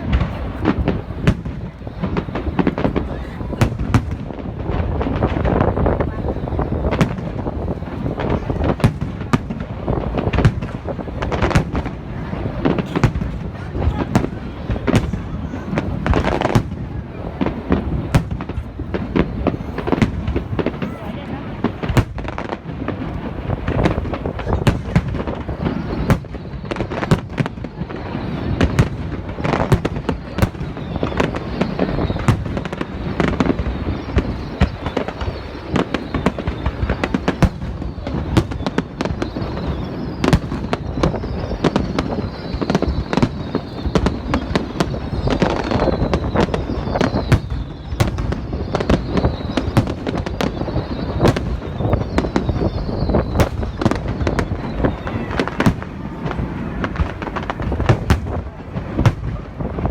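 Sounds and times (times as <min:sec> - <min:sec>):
fireworks bangs and crackles: 0:00.0 - 0:59.9
fireworks falling whistles: 0:00.0 - 0:59.9.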